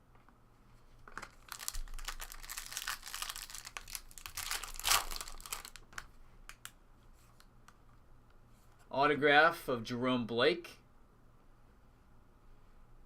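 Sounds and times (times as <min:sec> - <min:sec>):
card packaging crinkling: 0:01.1 - 0:06.7.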